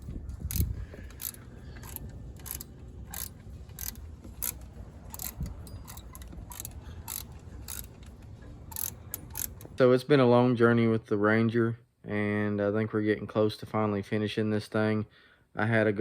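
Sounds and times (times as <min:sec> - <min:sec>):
low steady rumble: 0:00.0 - 0:10.2
metallic clicks of hand tools: 0:00.4 - 0:09.8.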